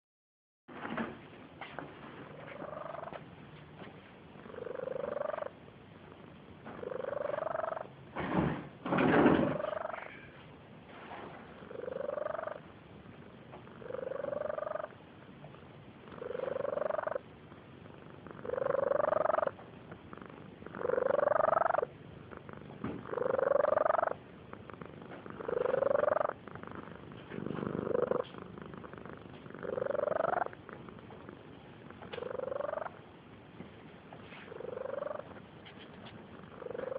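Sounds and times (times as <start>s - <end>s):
cat snoring: 2.3s - 3.1s, 4.4s - 5.6s, 6.8s - 8.4s, 9.1s - 10.3s, 11.5s - 12.6s, 13.7s - 15.0s, 16.1s - 17.2s, 18.0s - 30.7s, 32.1s - 33.0s, 34.3s - 35.3s, 36.4s - 36.9s.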